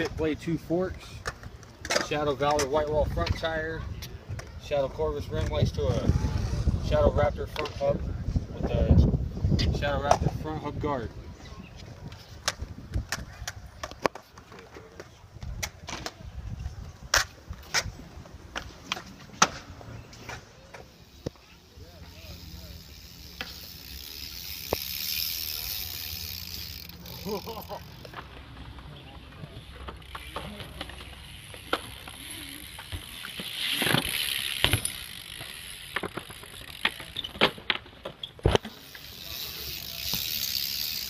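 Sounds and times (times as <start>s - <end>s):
bike knocks and clacks: 12.0s - 41.0s
bike knocking on ground: 29.8s - 38.8s.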